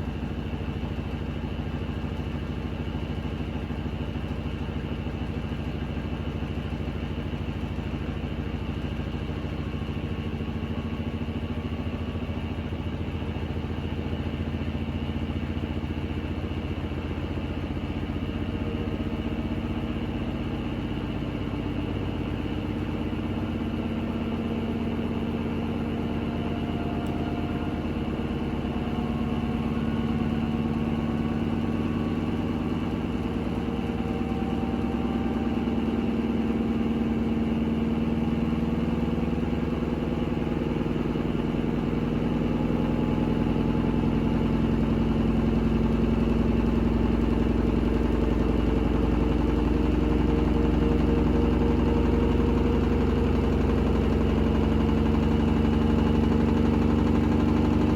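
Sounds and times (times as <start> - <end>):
washing machine spinning: 22.8 - 57.9.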